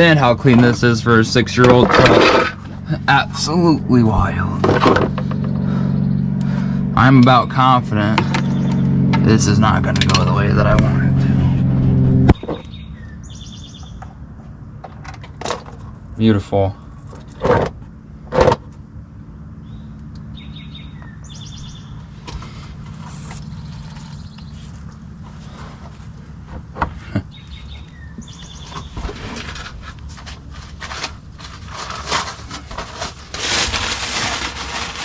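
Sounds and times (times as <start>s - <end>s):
tool scraping: 0.1s - 7.5s, 8.1s - 12.5s, 28.2s - 35.0s
birds chirping: 2.5s - 14.3s, 19.2s - 31.8s.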